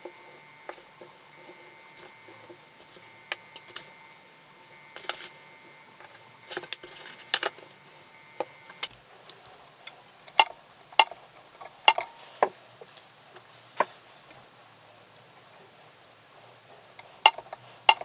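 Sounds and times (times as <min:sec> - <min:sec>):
hand tools clicking and tapping: 0:17.0 - 0:18.0.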